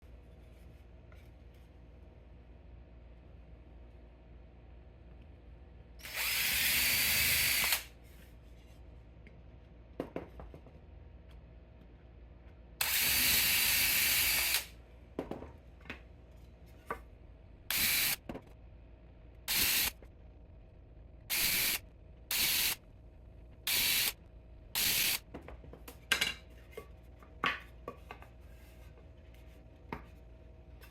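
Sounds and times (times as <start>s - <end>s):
power drill drilling wood: 6.0s - 7.9s, 12.8s - 14.7s, 17.7s - 18.2s, 19.5s - 19.9s, 21.3s - 22.8s, 23.7s - 24.1s, 24.8s - 25.2s.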